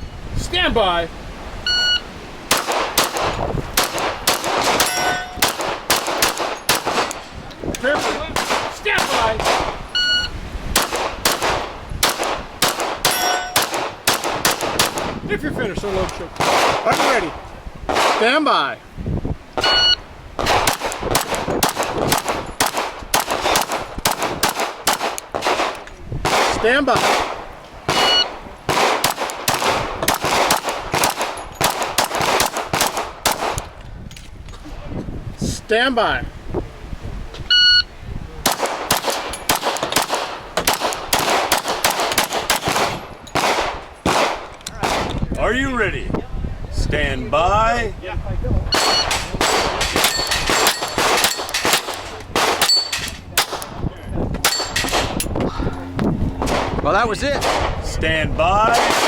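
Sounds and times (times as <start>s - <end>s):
shot timer beep: 1.7s - 2.1s, 10.0s - 10.3s, 19.6s - 20.0s, 28.0s - 28.3s, 37.5s - 37.9s, 48.7s - 49.1s
pistol firing rapid shots: 2.5s - 7.2s, 7.9s - 9.8s, 10.8s - 15.2s, 16.4s - 18.3s, 20.4s - 33.7s, 38.5s - 45.1s, 48.8s - 52.8s, 57.4s - 57.8s, 58.7s - 59.0s
steel targets clanging: 4.7s - 5.5s, 13.0s - 13.7s, 48.7s - 53.7s, 54.4s - 55.4s.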